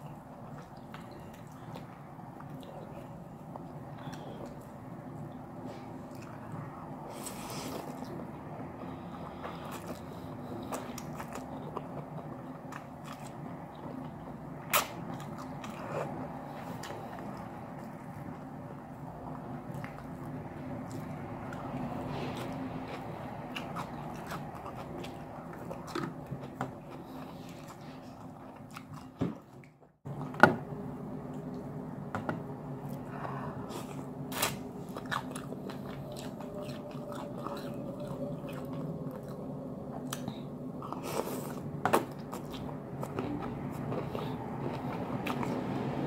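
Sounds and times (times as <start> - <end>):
faint steady hum: 0.0 - 46.0
person chewing and biting food: 9.1 - 18.6, 19.2 - 29.2, 32.9 - 46.0.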